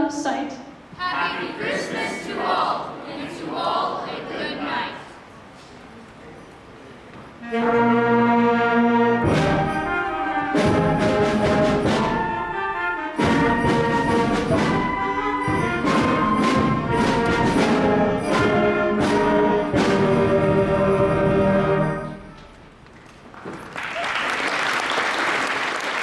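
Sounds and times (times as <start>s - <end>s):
concert band playing: 7.4s - 22.7s
sharp percussion hits: 9.2s - 12.6s, 13.2s - 22.6s.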